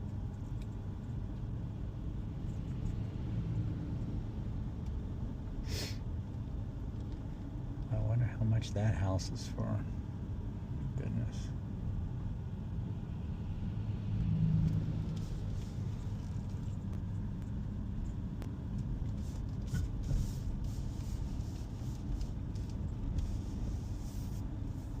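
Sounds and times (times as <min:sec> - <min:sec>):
car engine and tyre rumble: 0:00.0 - 0:25.0.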